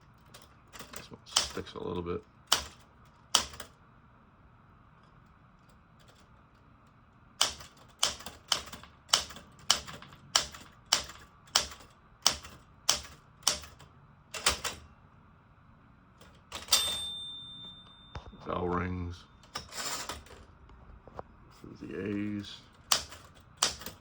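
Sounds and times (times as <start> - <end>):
typewriter key strikes: 0.2 - 1.6, 2.5 - 3.7, 7.4 - 13.8, 14.4 - 14.8, 16.2 - 18.0, 22.8 - 24.0
typewriter clatter: 0.2 - 1.7, 2.5 - 3.7, 7.4 - 13.8, 14.4 - 14.8, 16.2 - 17.0, 19.4 - 20.4, 22.1 - 24.0
typewriter margin bell ringing: 16.5 - 18.6, 19.4 - 20.4.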